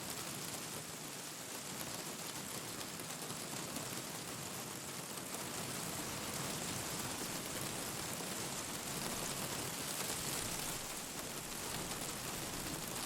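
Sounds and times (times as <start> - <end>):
rain hiss: 7.1 - 13.0.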